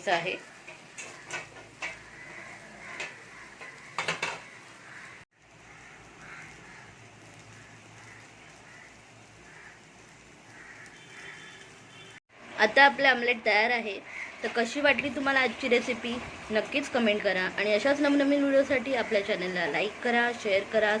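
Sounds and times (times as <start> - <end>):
omelette sizzling in a pan: 0.0 - 21.0
spatula knocking on pan: 0.1 - 4.8.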